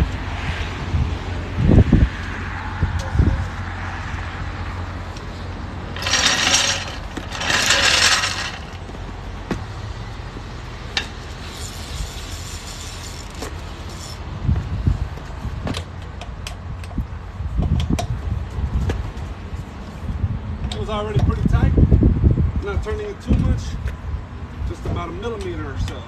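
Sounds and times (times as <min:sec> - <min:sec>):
wind on microphone: 0:00.0 - 0:04.8, 0:14.2 - 0:15.6, 0:20.0 - 0:25.1
jack hissing: 0:06.0 - 0:08.8
metal tools clinking: 0:06.0 - 0:08.9.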